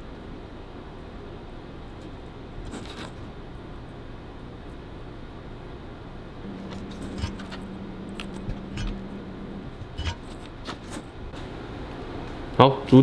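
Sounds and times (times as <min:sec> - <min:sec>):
steady low hum: 0:00.0 - 0:13.0
steady low drone: 0:06.3 - 0:11.4.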